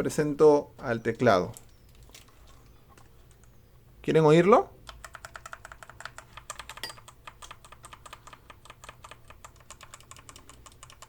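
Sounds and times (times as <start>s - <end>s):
mechanical keyboard typing: 4.8s - 11.0s.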